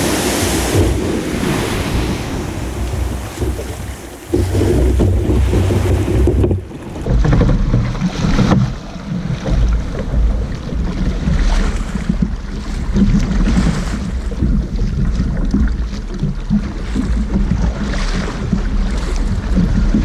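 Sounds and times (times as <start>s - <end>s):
sea water washing: 0.0s - 7.2s
wind buffeting microphone: 0.0s - 7.2s.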